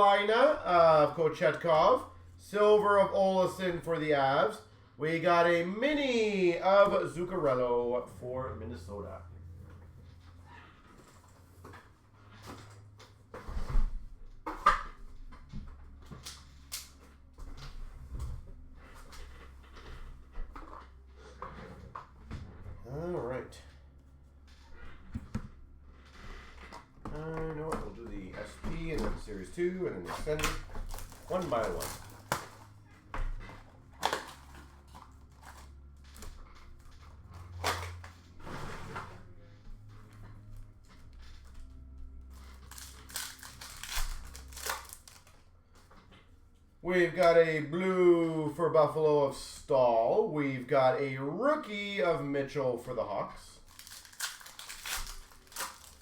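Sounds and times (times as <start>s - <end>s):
wrappers crinkling: 26.1s - 38.2s, 41.2s - 45.6s, 53.6s - 56.0s.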